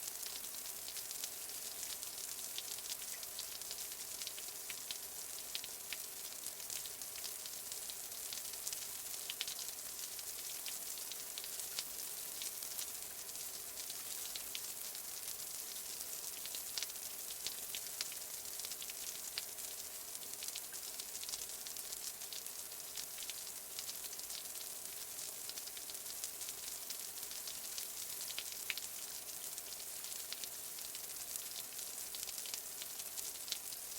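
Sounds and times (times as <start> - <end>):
light rain falling: 0.0 - 33.9.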